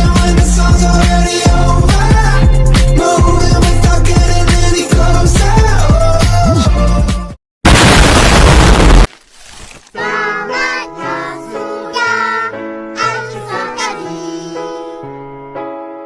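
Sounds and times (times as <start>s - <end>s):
song with singing voices: 0.0s - 7.3s, 10.0s - 15.0s
loud burst of noise: 7.6s - 9.1s.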